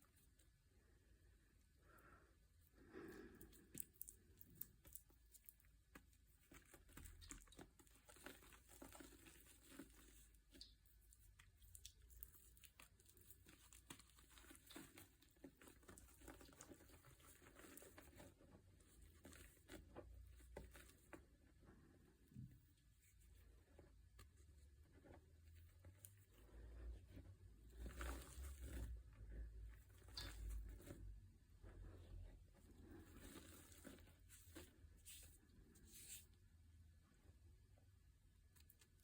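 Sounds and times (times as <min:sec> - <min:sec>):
faint crinkling and rustling: 0:00.0 - 0:39.0
small clicks and crackles: 0:03.2 - 0:32.0.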